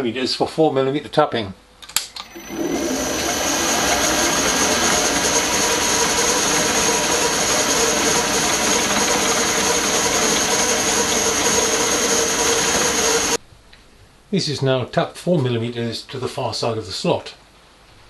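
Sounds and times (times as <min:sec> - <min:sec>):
electric drill boring into metal: 0:02.2 - 0:13.4.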